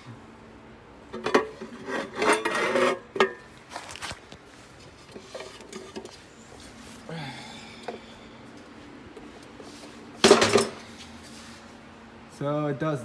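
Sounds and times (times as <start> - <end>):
metal parts clattering: 10.2 - 10.9.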